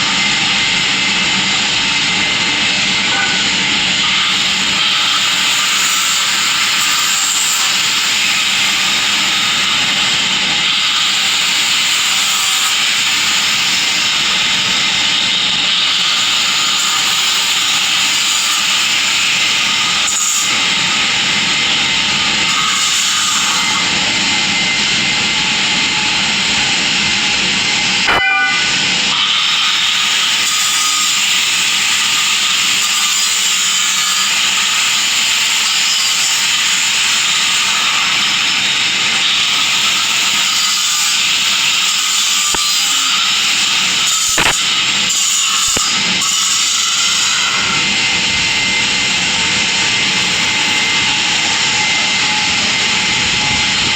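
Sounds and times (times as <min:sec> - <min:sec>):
loud steady hiss: 0:27.4 - 0:46.6
brief click: 0:28.1 - 0:28.5, 0:44.4 - 0:44.6.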